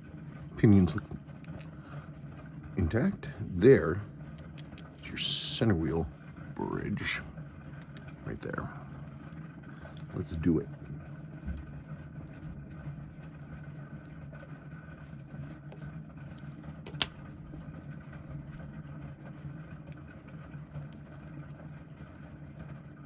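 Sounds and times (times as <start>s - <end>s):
low background hum: 0.0s - 23.0s
small clicks of watchmaker's tools: 4.4s - 5.0s.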